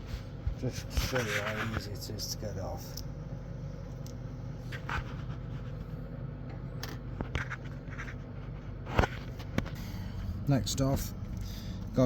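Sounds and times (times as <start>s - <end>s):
steady low hum: 0.0s - 12.0s
small clicks and scrapes: 0.7s - 2.1s, 4.0s - 6.0s, 6.8s - 9.8s.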